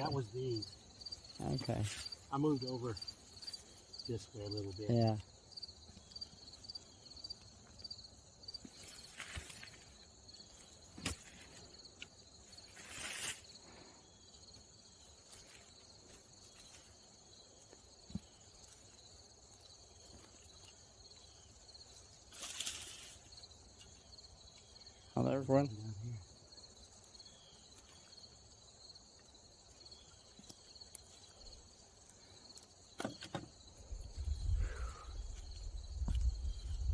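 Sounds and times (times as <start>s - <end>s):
crickets chirring: 0.0s - 36.9s
rustling scrapes: 12.6s - 13.6s, 22.2s - 23.3s.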